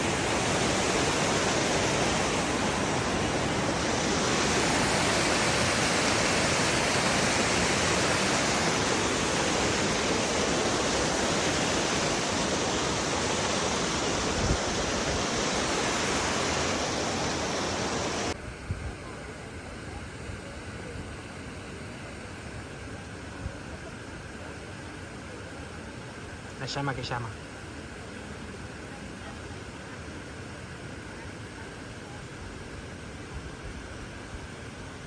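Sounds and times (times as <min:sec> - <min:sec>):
waterfall rushing: 0:00.0 - 0:18.4.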